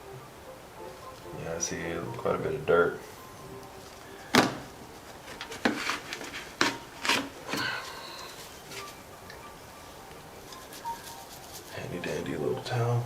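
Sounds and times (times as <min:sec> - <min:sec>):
rubbing and rummaging: 0:03.8 - 0:09.0, 0:10.5 - 0:12.0.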